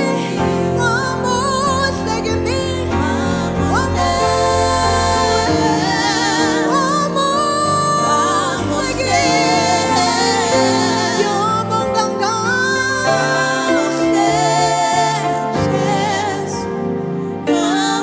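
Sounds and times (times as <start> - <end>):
sustained instrumental chords and bass: 0.4 - 12.2.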